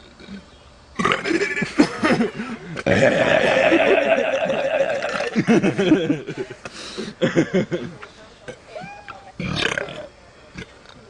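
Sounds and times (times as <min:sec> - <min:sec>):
man belching: 0:01.0 - 0:01.4, 0:02.8 - 0:05.6
short vocal bursts: 0:02.3 - 0:05.5
breathy rush of air: 0:06.3 - 0:07.2.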